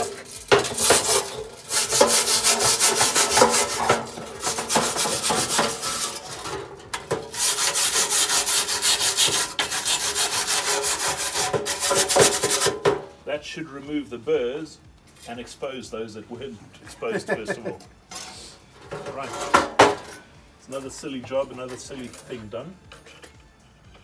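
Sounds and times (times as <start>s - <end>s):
rasping deburring strokes: 0.0s - 12.8s.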